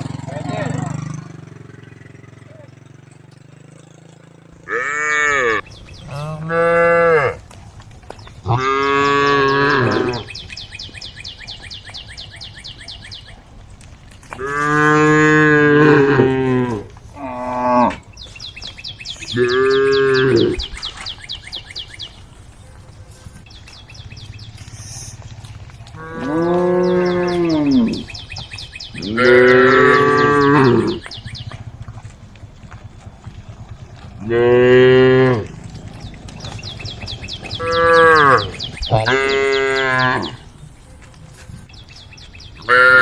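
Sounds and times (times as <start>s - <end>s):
cows mooing: 3.6s - 7.6s, 8.4s - 10.4s, 14.2s - 18.4s, 19.0s - 21.0s, 24.0s - 32.1s, 33.1s - 40.6s, 41.8s - 43.0s.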